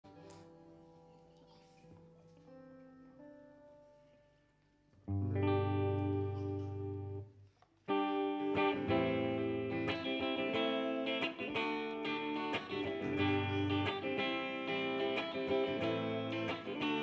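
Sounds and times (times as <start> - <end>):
sustained electric guitar notes: 5.0 - 17.0
loud guitar chord with bass: 5.1 - 7.3, 8.0 - 17.0.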